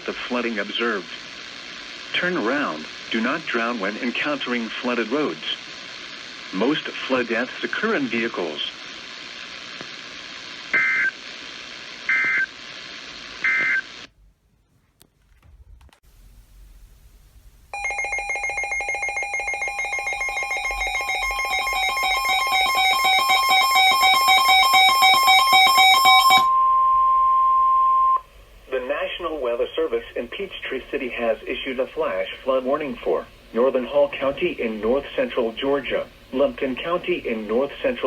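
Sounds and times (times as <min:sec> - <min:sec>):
rapid pulsing buzzy beep: 0:17.8 - 0:28.2
steady warning tone: 0:17.8 - 0:38.0.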